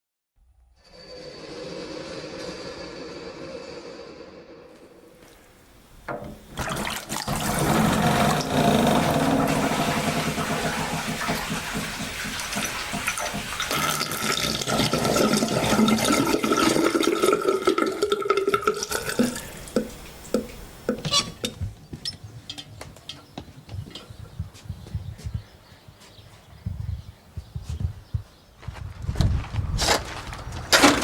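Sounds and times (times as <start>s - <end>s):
water running and gurgling: 6.1s - 21.5s
water drips and clicks: 9.7s - 23.3s.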